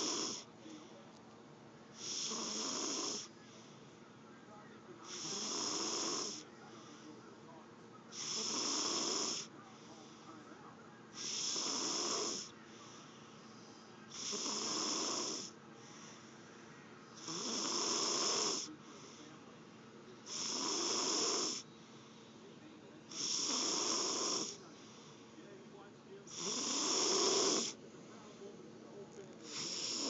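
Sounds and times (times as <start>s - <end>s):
loud hissing snore: 0.0s - 0.5s, 2.0s - 3.4s, 5.0s - 7.1s, 8.1s - 10.1s, 11.1s - 13.1s, 14.1s - 16.3s, 17.1s - 19.3s, 20.2s - 21.7s, 23.1s - 25.3s, 26.3s - 27.8s, 29.4s - 30.0s
soft breathing: 0.0s - 1.3s, 6.2s - 8.3s, 9.4s - 11.5s, 12.2s - 14.5s, 15.4s - 17.4s, 18.4s - 20.5s, 21.5s - 23.4s, 24.4s - 26.7s.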